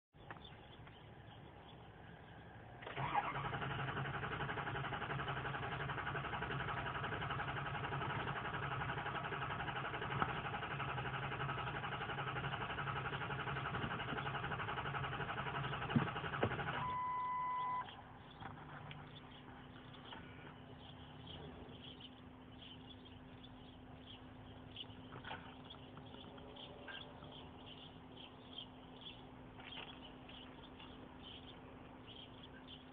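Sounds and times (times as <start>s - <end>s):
starter motor cranking engine: 2.8s - 19.2s
short steady beep: 16.8s - 17.9s.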